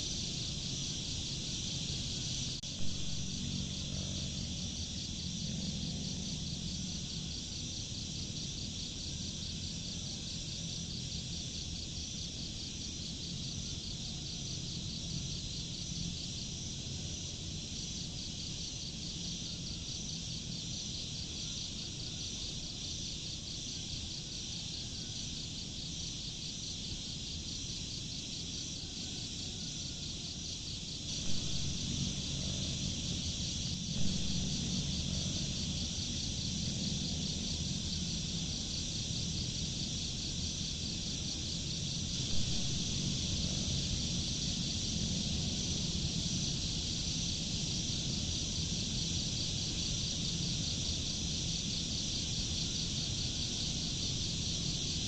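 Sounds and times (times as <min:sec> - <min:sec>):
crickets chirping: 0:00.0 - 0:55.0
low rumble: 0:31.1 - 0:38.4, 0:42.1 - 0:46.2.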